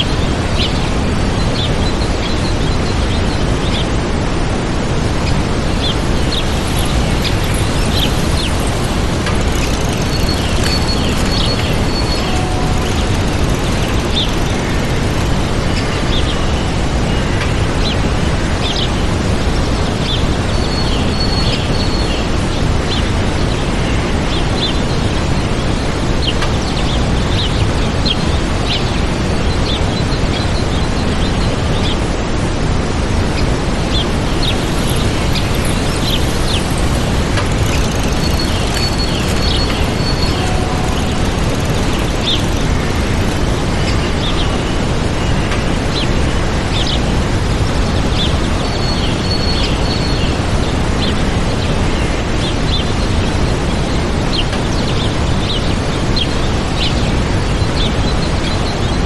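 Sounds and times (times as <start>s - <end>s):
waterfall rushing: 0.0s - 20.5s, 27.3s - 59.0s
small birds chirping: 5.2s - 32.1s, 33.3s - 59.0s.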